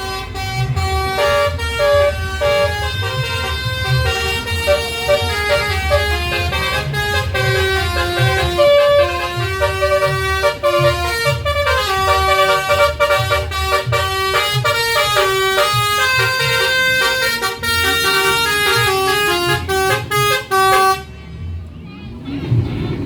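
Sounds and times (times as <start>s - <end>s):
musical air horn playing a tune: 0.0s - 21.1s
low rhythmic pulse: 0.0s - 21.7s.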